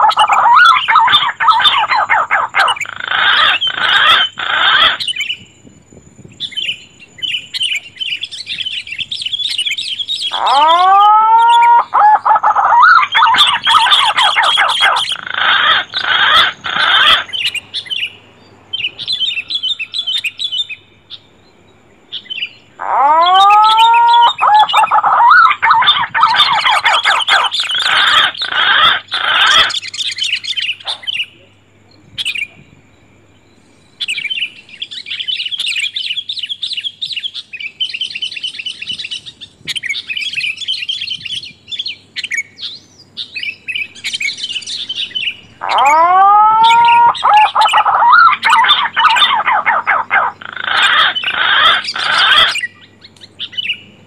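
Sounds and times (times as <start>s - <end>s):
rising whistled bird call: 0.0s - 5.4s, 6.4s - 18.1s, 22.2s - 31.3s, 39.9s - 53.8s
dense bird chirping: 0.0s - 54.0s
faint steady hum: 0.0s - 54.0s
rapid chirping trills: 0.0s - 54.0s.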